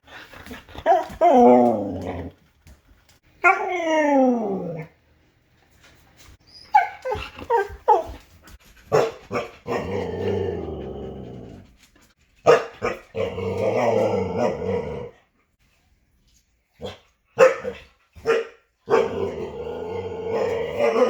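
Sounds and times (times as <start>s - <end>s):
dog growly grumbles: 1.2s - 2.4s, 9.7s - 11.8s, 19.0s - 21.0s
dogs yipping: 6.5s - 8.2s
dog barking sharply: 12.4s - 13.0s.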